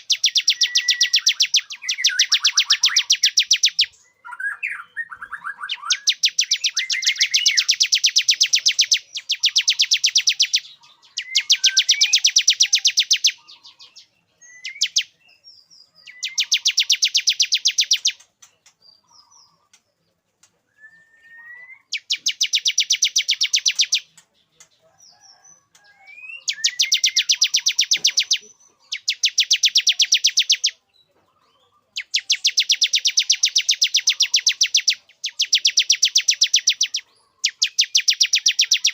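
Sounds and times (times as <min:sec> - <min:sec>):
bird rising chirps: 0:00.0 - 0:18.3, 0:20.8 - 0:24.2, 0:24.8 - 0:30.8
bird singing rapid high notes: 0:00.0 - 0:18.3, 0:21.2 - 0:24.2, 0:26.1 - 0:30.8, 0:31.9 - 0:38.9.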